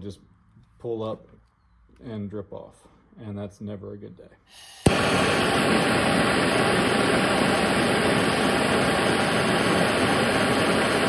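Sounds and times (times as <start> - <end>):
gas torch flame hissing: 4.6 - 11.0.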